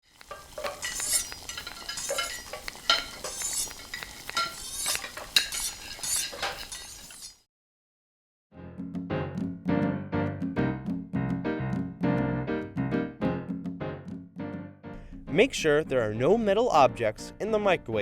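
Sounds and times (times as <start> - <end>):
dishes and utensils clinking: 0.1 - 7.2
piano music: 8.6 - 18.0.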